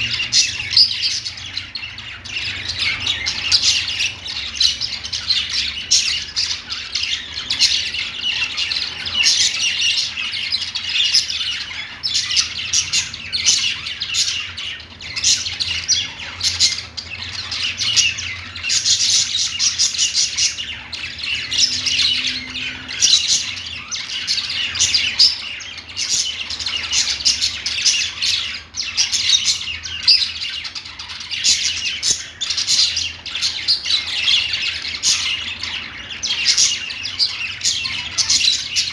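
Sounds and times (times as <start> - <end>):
budgerigars chattering and chirping: 0.0 - 38.9.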